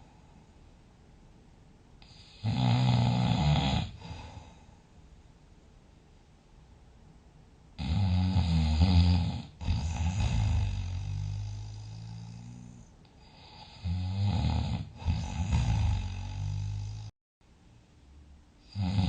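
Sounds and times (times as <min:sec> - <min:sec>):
person snoring: 0:02.0 - 0:04.7, 0:07.8 - 0:17.1, 0:18.6 - 0:19.0.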